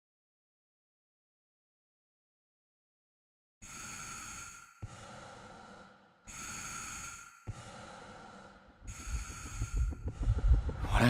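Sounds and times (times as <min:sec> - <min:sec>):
person breathing heavily: 0:03.6 - 0:11.0.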